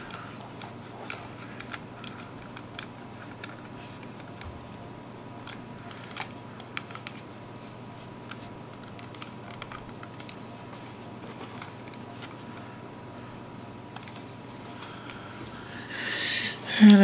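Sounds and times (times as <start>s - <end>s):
plastic computer mouse clicking: 0.0s - 4.4s, 8.2s - 10.4s
steady low hum: 0.0s - 17.0s.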